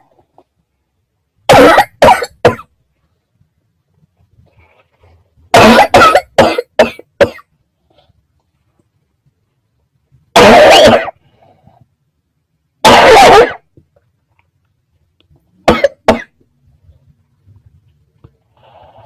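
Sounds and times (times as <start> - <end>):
person coughing loudly: 1.5 - 2.7, 5.5 - 7.5, 10.4 - 11.2, 12.8 - 13.6, 15.6 - 16.4.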